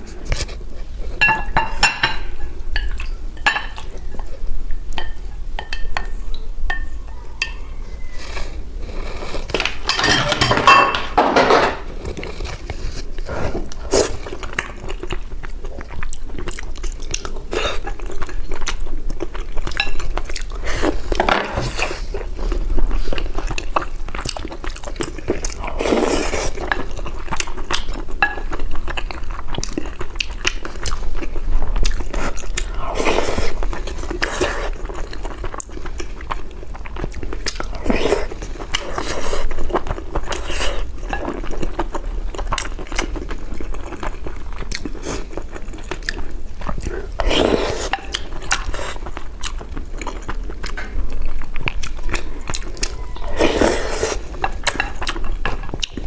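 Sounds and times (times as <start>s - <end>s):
chewing: 11.9s - 56.0s.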